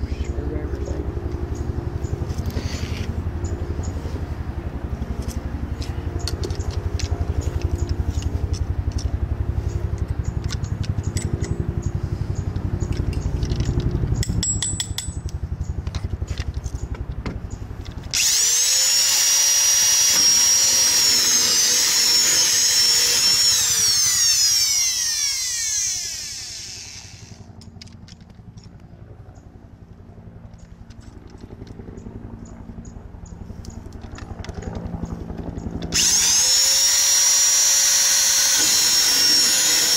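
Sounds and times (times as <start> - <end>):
power tool high-pitched whine: 18.1 - 27.5, 35.9 - 39.9.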